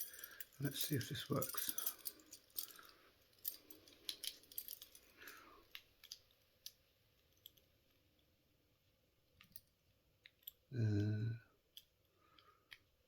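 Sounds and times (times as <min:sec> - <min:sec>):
key tapping against handcuffs: 0:00.0 - 0:06.2.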